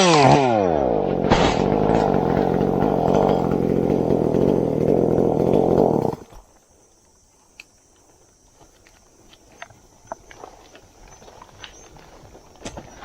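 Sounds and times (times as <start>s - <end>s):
chainsaw running: 0.0s - 6.4s.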